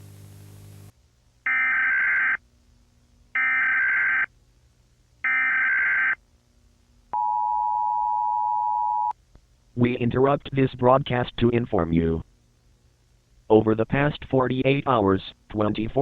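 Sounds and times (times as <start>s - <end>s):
buzzing hum with hiss: 0.0s - 5.4s, 9.1s - 16.0s.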